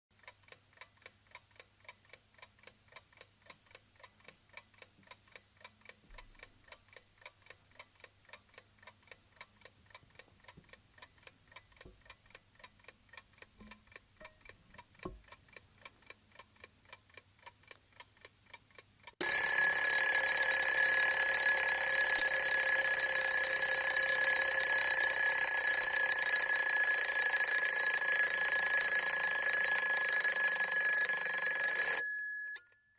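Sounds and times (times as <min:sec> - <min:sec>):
alarm clock ticking: 0:19.2 - 0:32.8
alarm bell ringing: 0:19.2 - 0:32.9.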